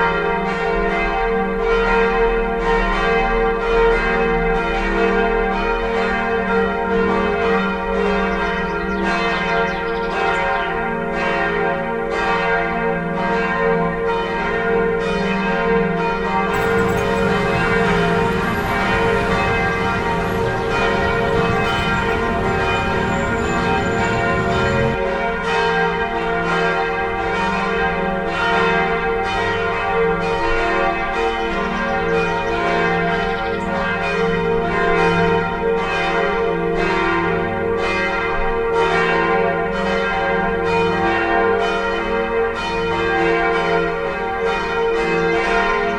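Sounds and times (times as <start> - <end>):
broad rushing noise: 16.6 - 25.0
church bells pealing: 16.6 - 25.0.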